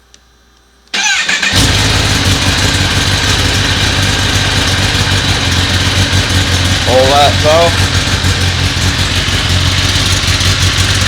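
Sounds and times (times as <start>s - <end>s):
electric starter cranking: 1.0s - 5.0s
motorcycle engine idling: 1.5s - 11.0s.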